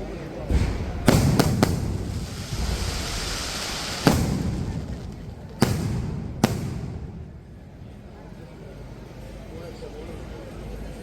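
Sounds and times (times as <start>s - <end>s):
background hiss: 0.0s - 9.4s
fireworks bangs: 0.4s - 8.4s.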